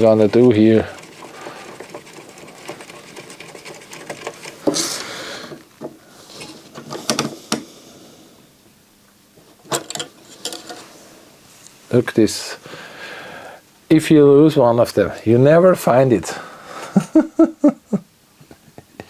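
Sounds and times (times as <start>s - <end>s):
small parts clicking and rattling: 0.0s - 5.6s.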